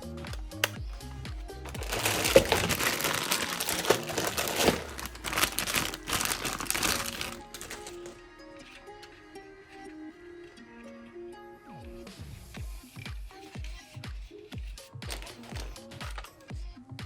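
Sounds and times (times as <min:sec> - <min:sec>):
background music: 0:00.0 - 0:17.0
packaging rustling and crackling: 0:01.6 - 0:08.2, 0:15.1 - 0:16.4.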